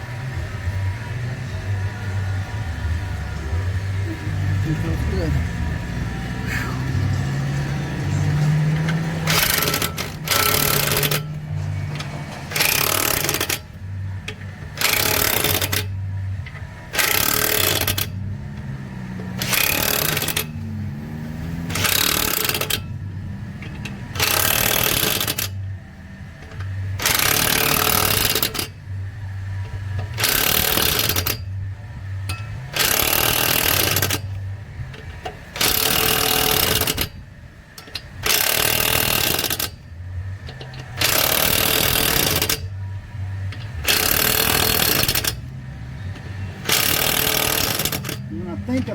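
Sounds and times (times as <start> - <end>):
impact wrench hammering lug nuts: 8.7 - 20.7, 21.4 - 23.0, 23.6 - 25.6, 26.4 - 28.8, 29.6 - 31.6, 32.3 - 37.2, 37.8 - 42.8, 43.4 - 48.9.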